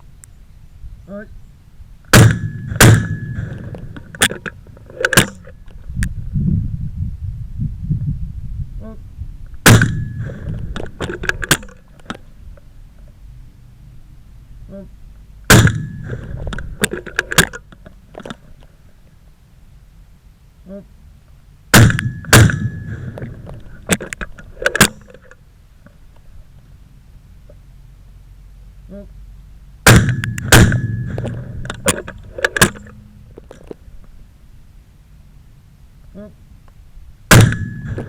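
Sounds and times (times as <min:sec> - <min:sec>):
shotgun shots: 0:02.1 - 0:04.4, 0:09.6 - 0:10.6, 0:15.5 - 0:16.4, 0:21.7 - 0:23.5, 0:29.8 - 0:32.0, 0:37.3 - 0:38.0.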